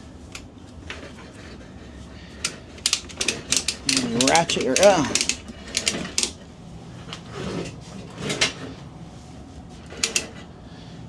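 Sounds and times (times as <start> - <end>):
ratchet strap clicking: 2.4 - 6.4, 10.0 - 10.3.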